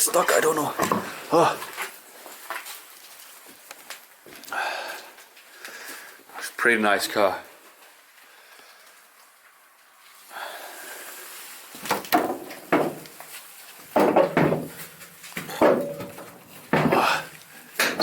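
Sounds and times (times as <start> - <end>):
metal scraping and knocking: 12.0 - 13.2, 13.9 - 18.0.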